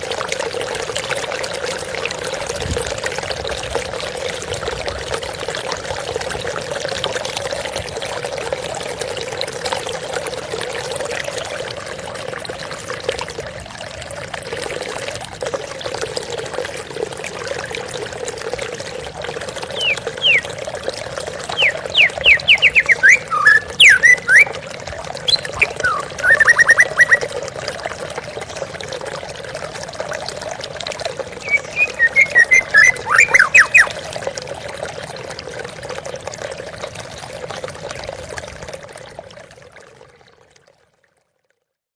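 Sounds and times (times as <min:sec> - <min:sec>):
trickling water: 0:00.0 - 0:41.9
songbird singing: 0:19.7 - 0:20.5, 0:21.5 - 0:24.5, 0:25.3 - 0:27.2, 0:31.4 - 0:34.0.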